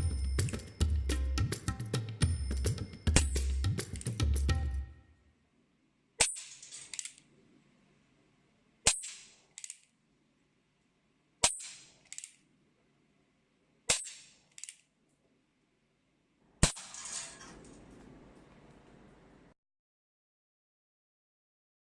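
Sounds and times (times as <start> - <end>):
bb gun sharp crack: 8.8 - 9.8, 11.4 - 12.4, 13.9 - 14.7.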